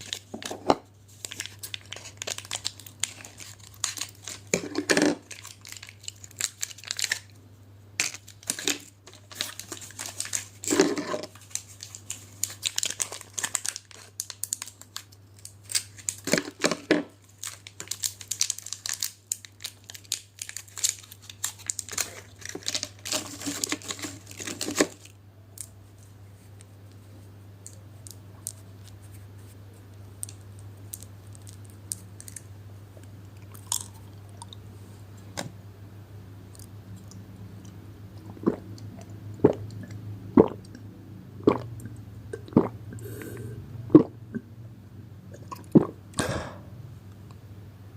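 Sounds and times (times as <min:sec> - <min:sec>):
packaging crinkling and tearing: 0:00.0 - 0:07.4, 0:08.0 - 0:26.1, 0:30.1 - 0:32.5.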